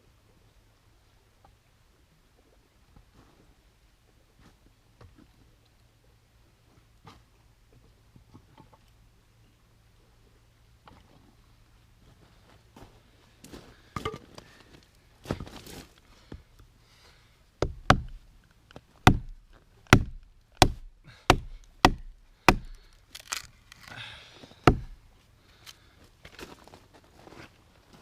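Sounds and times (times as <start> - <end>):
axe chopping wood: 17.6 - 18.2, 19.0 - 23.4, 24.6 - 25.0.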